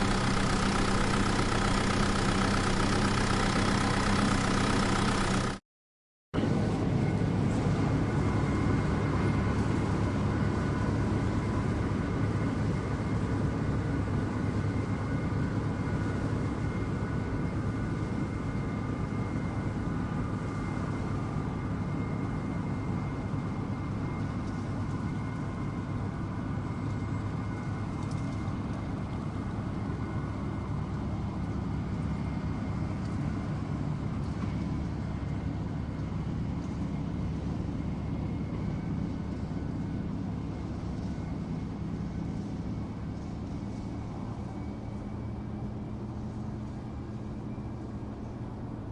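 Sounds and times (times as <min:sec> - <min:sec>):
tractor engine running: 0:00.0 - 0:05.6, 0:23.1 - 0:48.0.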